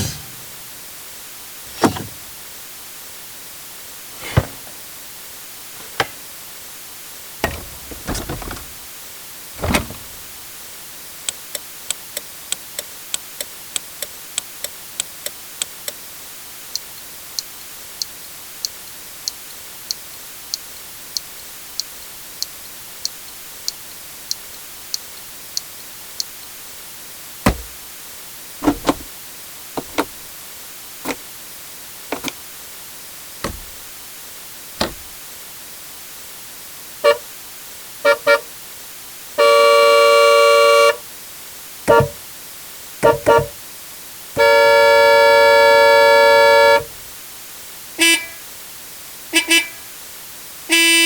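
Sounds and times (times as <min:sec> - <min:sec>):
mechanical clicks and clunks: 0:01.7 - 0:02.2, 0:07.4 - 0:08.8, 0:09.6 - 0:10.3, 0:27.5 - 0:27.8, 0:28.6 - 0:29.1, 0:29.8 - 0:30.2, 0:32.1 - 0:32.4, 0:33.4 - 0:33.8, 0:34.8 - 0:35.2
vehicle horns honking: 0:07.4 - 0:08.7, 0:09.6 - 0:10.2, 0:38.1 - 0:38.4, 0:39.4 - 0:41.0, 0:41.9 - 0:42.2, 0:43.0 - 0:43.6, 0:44.4 - 0:47.0, 0:48.0 - 0:48.4, 0:49.4 - 0:49.8, 0:50.7 - 0:51.0.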